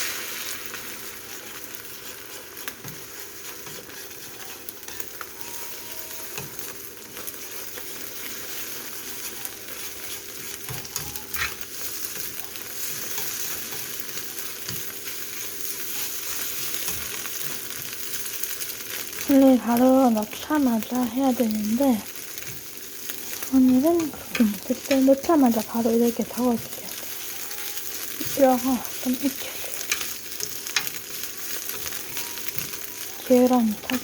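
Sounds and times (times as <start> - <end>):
eggs sizzling in oil: 0.0 - 34.0
utensil scraping a pan: 1.4 - 13.9.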